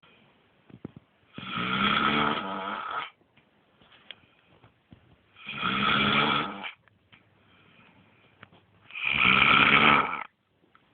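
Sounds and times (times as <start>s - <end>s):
loud snoring: 1.4s - 3.2s, 5.4s - 6.8s, 8.9s - 10.3s
quiet breathing: 3.8s - 5.5s, 6.6s - 9.0s.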